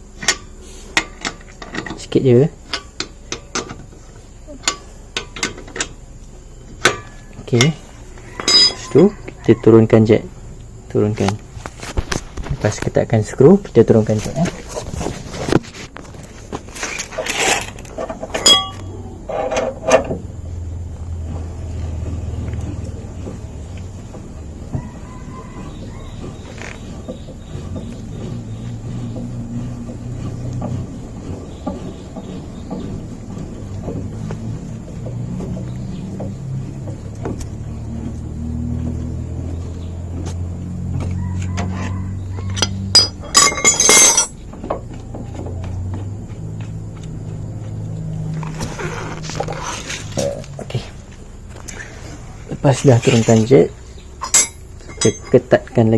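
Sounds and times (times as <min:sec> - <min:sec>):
metal car jack clinking: 0:06.8 - 0:07.7, 0:08.3 - 0:09.1, 0:17.0 - 0:20.2, 0:42.4 - 0:44.9, 0:54.2 - 0:55.6
metal clanking: 0:06.8 - 0:09.7, 0:14.1 - 0:55.9
car jack winding: 0:22.0 - 0:45.1.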